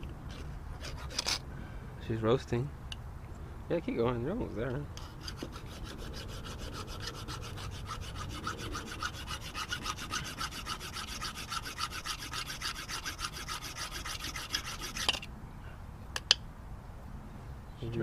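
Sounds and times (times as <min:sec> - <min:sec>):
file rasping on metal: 0:00.8 - 0:01.4, 0:05.0 - 0:15.3.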